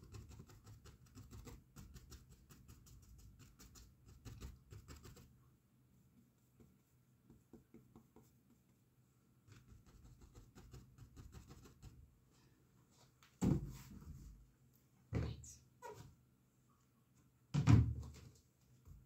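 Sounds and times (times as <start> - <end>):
paintbrush dabbing on canvas: 6.4 - 12.0.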